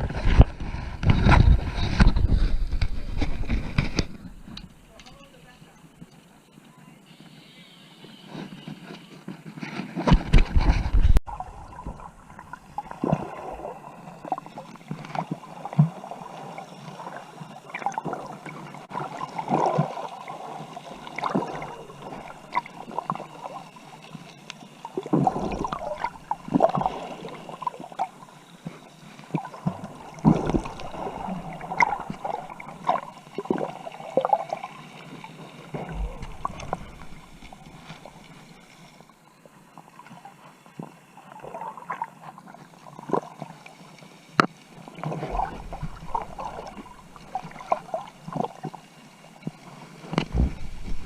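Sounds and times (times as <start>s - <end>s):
water gurgling and splashing: 10.2s - 39.1s, 39.9s - 43.9s, 44.5s - 51.0s.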